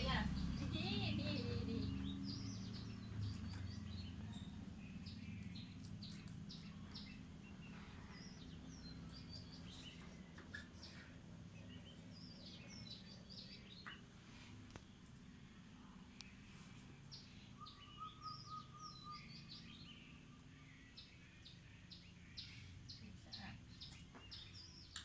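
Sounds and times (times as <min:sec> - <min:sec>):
low background rumble: 0:00.0 - 0:10.0
small birds chirping: 0:00.0 - 0:25.0.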